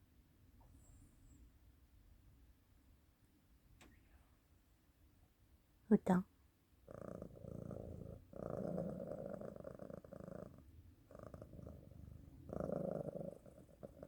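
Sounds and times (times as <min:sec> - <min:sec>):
cat purring: 0:06.8 - 0:14.0.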